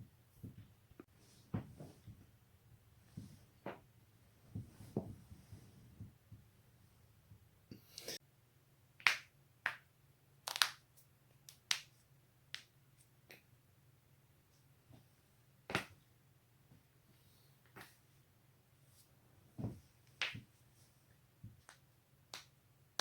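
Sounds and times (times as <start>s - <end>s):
soft low thuds: 0.1s - 6.6s.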